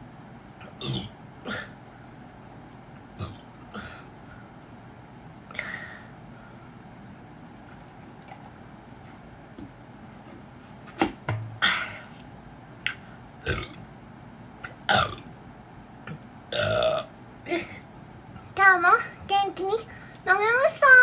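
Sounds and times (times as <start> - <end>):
woman burping: 13.4 - 13.8, 14.9 - 15.2, 16.5 - 17.8.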